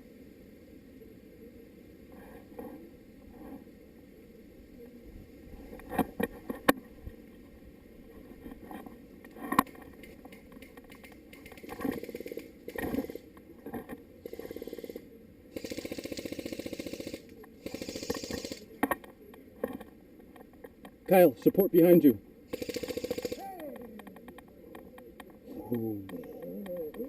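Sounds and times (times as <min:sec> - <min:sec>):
airsoft rifle automatic fire: 0:11.4 - 0:13.2, 0:15.6 - 0:18.7, 0:22.5 - 0:23.4.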